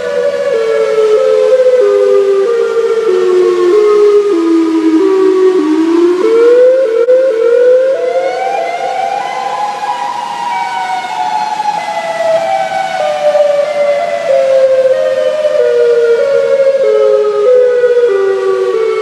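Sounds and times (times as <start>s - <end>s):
two-tone warning siren wail: 0.0s - 19.0s.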